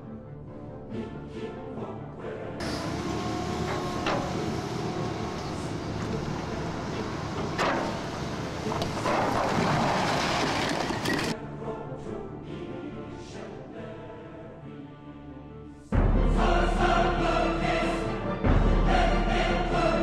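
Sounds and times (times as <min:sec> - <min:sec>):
heavy machinery rumbling: 0:02.6 - 0:11.4
debris crunching and clattering: 0:06.9 - 0:11.4.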